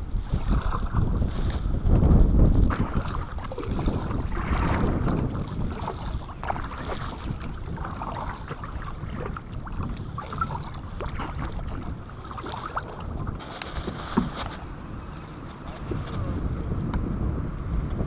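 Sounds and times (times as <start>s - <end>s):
wind rumbling on microphone: 0.0s - 18.0s
kayak gear clicks and knocks: 13.4s - 14.7s.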